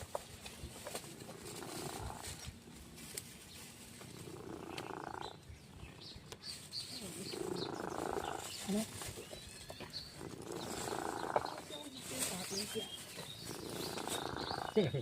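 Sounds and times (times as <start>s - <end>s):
cat snoring: 4.4s - 5.3s, 10.3s - 11.5s, 13.6s - 14.8s.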